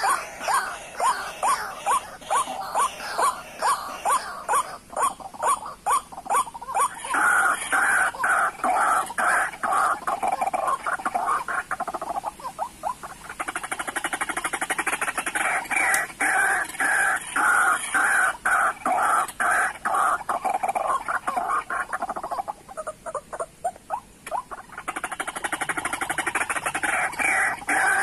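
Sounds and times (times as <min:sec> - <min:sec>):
bird call notes: 0:00.0 - 0:11.4
bird chattering trill: 0:00.0 - 0:28.0.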